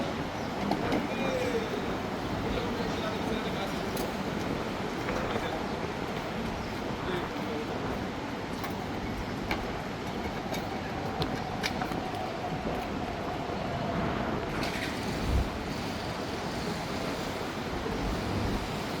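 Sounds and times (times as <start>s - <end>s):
car park hum and hiss: 11.2s - 19.0s.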